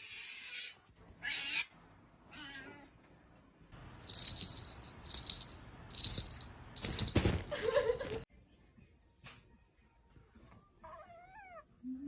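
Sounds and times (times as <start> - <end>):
metallic jingling: 3.9 - 8.2.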